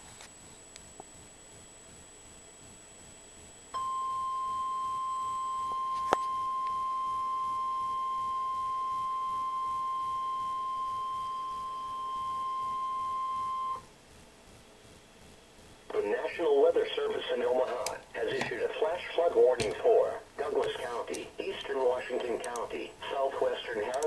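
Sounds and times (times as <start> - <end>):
faint radio hiss: 0.0 - 24.0
high pure alarm tone: 3.7 - 13.9.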